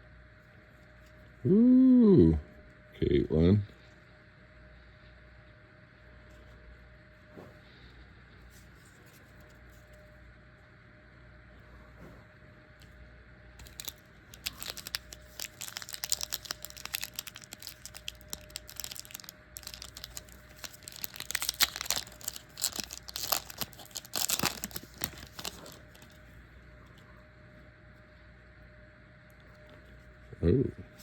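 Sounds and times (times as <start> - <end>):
wrapper crinkling and tearing: 13.6 - 26.2.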